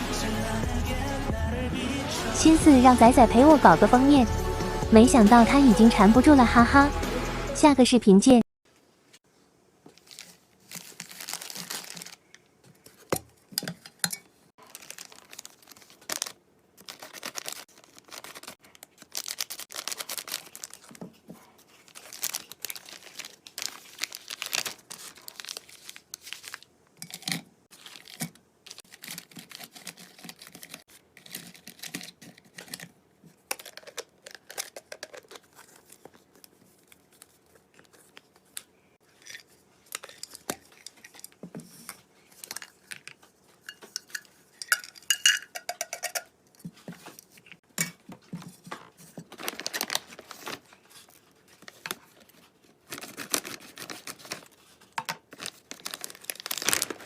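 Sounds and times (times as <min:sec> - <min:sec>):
dry rustling and crinkling: 0:09.9 - 0:13.1, 0:14.6 - 0:26.7, 0:46.6 - 0:57.0.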